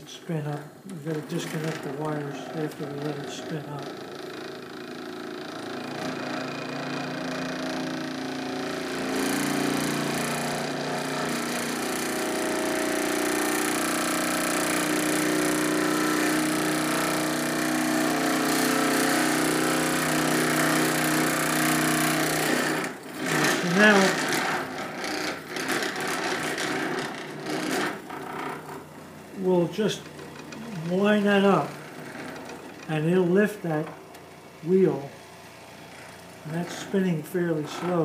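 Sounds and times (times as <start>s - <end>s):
electric motor humming: 0.0s - 38.0s.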